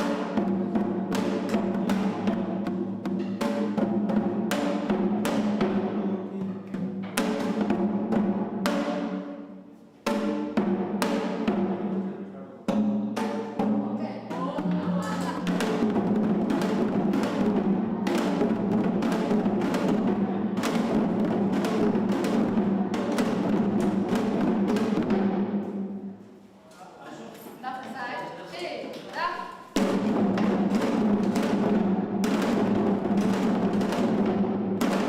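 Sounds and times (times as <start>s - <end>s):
hourglass drum strokes and roll: 0.0s - 9.3s, 12.7s - 26.0s, 29.7s - 35.0s.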